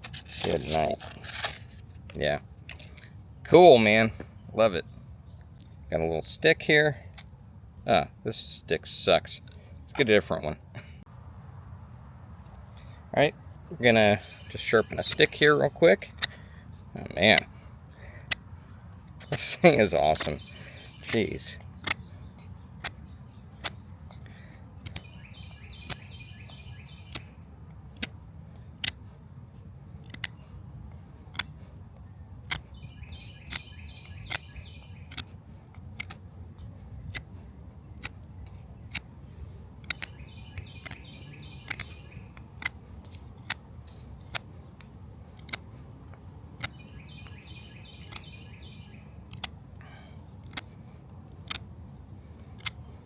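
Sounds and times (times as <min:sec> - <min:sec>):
bird trilling: 0:18.0 - 0:27.4, 0:32.7 - 0:35.3, 0:39.8 - 0:43.2, 0:46.6 - 0:50.6.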